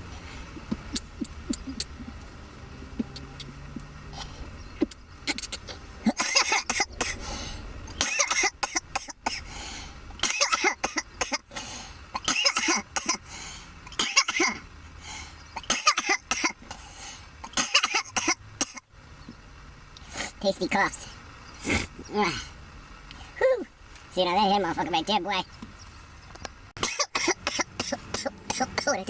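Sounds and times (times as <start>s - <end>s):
person coughing hard: 5.7s - 7.2s, 8.0s - 9.5s, 10.2s - 11.6s, 12.2s - 13.2s, 13.9s - 14.6s, 15.6s - 16.8s, 17.4s - 18.8s, 26.8s - 29.0s.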